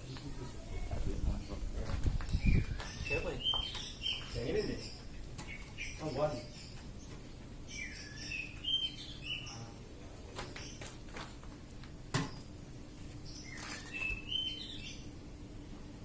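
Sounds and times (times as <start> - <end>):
faint steady hum: 0.0 - 16.0
bird chirping: 0.6 - 9.8, 13.2 - 15.2.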